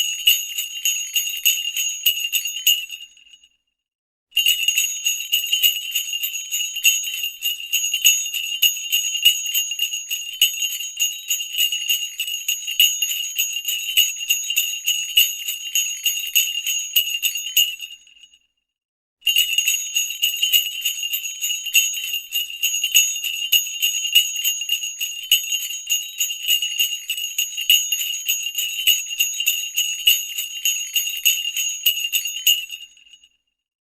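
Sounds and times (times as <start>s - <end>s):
sleigh bells jingling: 0.0s - 3.0s, 4.4s - 17.8s, 19.3s - 32.9s.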